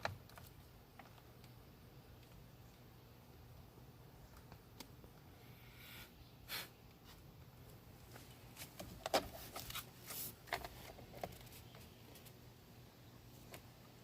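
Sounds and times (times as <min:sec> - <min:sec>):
faint handling clicks and rustles: 0:06.9 - 0:12.4.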